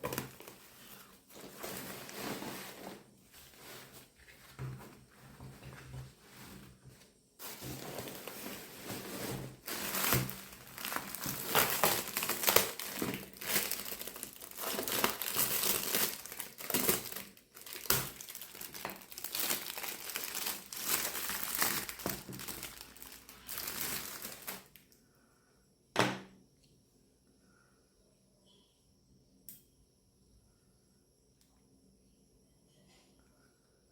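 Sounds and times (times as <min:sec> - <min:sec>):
packaging crinkling and rustling: 0:00.0 - 0:24.8.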